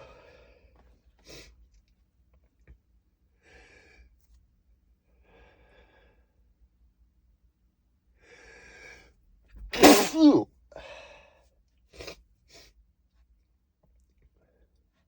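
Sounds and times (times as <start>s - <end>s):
stifled sneezes: 9.7s - 10.4s.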